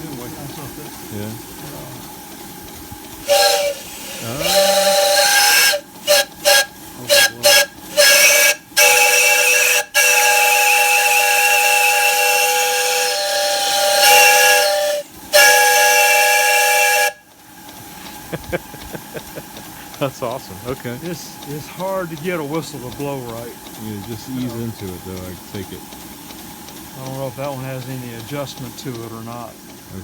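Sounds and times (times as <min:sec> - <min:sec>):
hiss of escaping steam: 0:00.0 - 0:30.0
steam whistle blasts: 0:03.2 - 0:17.3.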